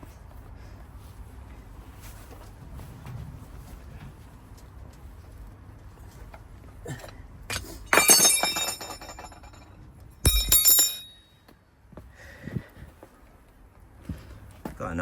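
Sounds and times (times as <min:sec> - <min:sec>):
metal tools clanking: 0:07.5 - 0:09.7, 0:10.3 - 0:11.3.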